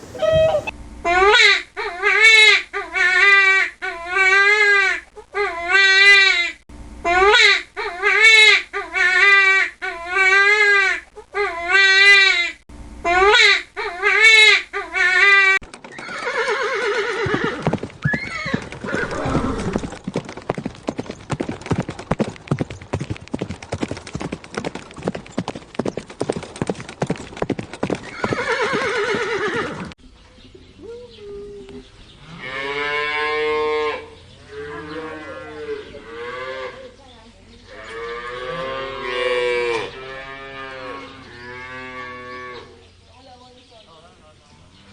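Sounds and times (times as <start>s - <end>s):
high animal calls: 0.0s - 20.0s
cattle mooing: 32.2s - 36.9s, 37.7s - 42.8s.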